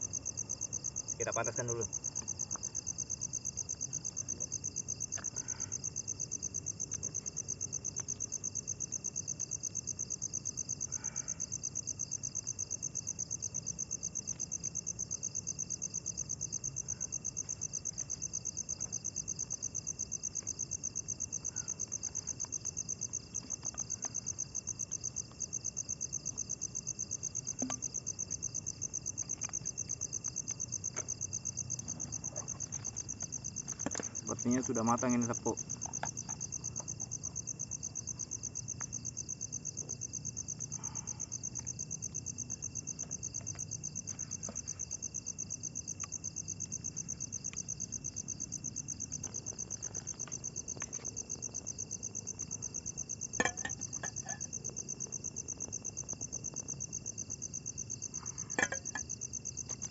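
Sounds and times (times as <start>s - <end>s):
crickets trilling: 0.0s - 59.9s
high insect tone: 0.0s - 59.9s.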